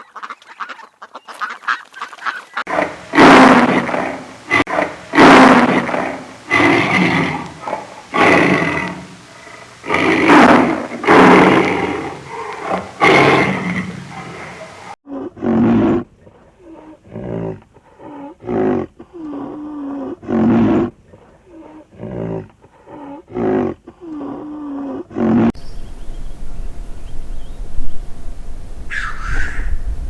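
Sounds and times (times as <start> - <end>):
lion roaring: 2.7 - 16.1
lion drawing breath: 16.4 - 18.4.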